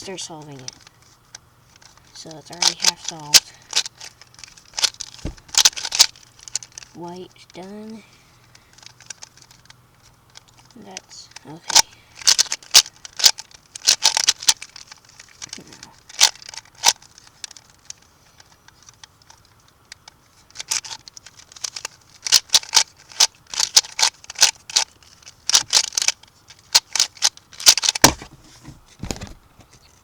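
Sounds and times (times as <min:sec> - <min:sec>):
puzzle cube clicking: 0:01.8 - 0:08.0, 0:08.8 - 0:18.0, 0:20.5 - 0:28.4.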